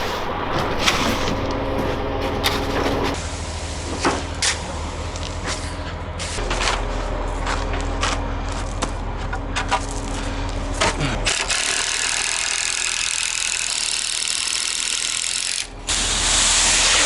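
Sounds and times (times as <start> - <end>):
short scraping strokes: 0.0 - 3.2
falling whine: 0.0 - 12.4
motor humming: 0.0 - 17.0
steady hiss: 15.9 - 17.0.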